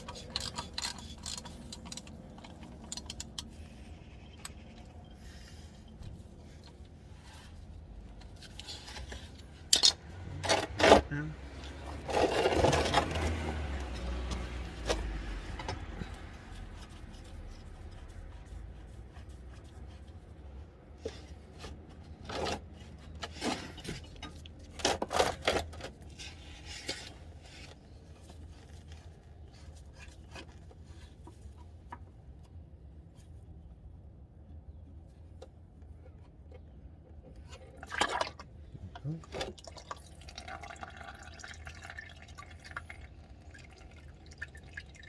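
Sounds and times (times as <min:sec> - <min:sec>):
wrench scraping and clinking: 0:00.0 - 0:03.6.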